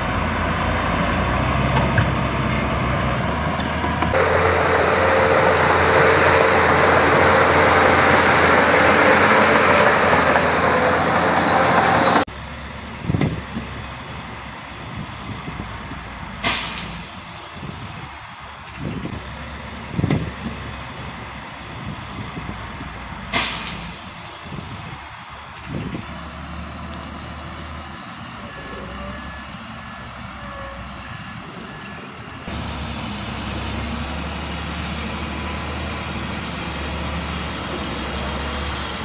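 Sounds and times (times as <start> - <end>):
diesel truck engine running: 0.0 - 39.0
air brake hisses: 16.4 - 18.1, 23.3 - 25.2.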